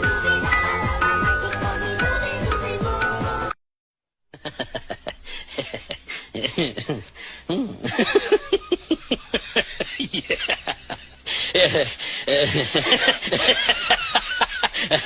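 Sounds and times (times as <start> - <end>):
rapid choppy laughter: 4.4 - 15.0.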